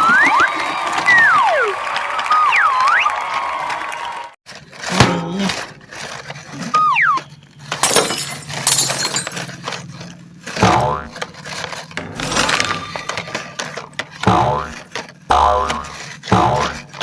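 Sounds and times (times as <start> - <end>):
falling whistle: 0.0 - 3.4, 6.7 - 7.4
shattering and crackling: 7.6 - 14.2.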